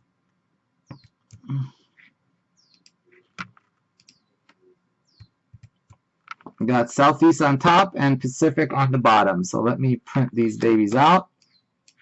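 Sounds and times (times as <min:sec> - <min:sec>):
computer mouse clicks: 0:02.6 - 0:04.6, 0:11.4 - 0:12.0.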